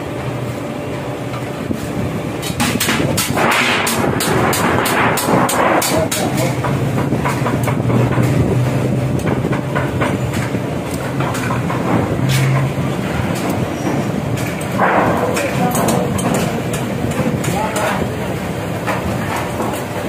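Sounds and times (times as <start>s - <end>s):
steady low hum: 0.0s - 20.0s
hammer striking hot iron on anvil: 2.4s - 8.4s.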